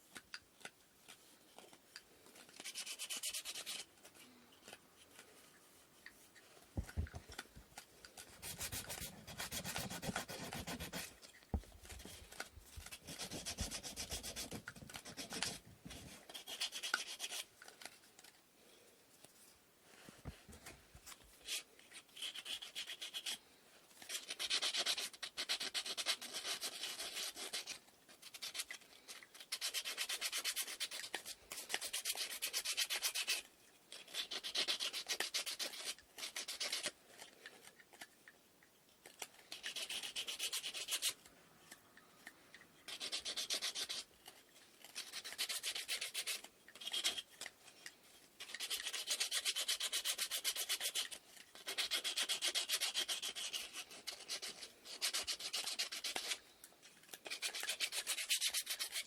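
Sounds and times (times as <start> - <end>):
sandpaper scratching on wood: 2.6 - 3.9, 8.3 - 11.2, 12.9 - 15.6, 39.7 - 41.1, 42.9 - 44.0, 48.5 - 56.4, 57.3 - 59.0.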